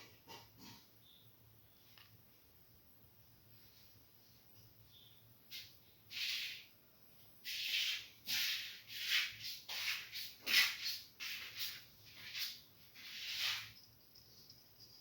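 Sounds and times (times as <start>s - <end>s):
short scratchy noises: 7.4s - 13.9s.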